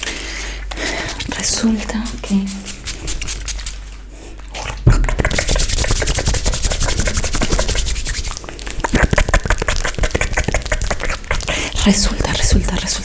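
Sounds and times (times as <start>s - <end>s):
scratchy rubbing: 5.2s - 13.0s
crisp clicks: 5.3s - 13.0s.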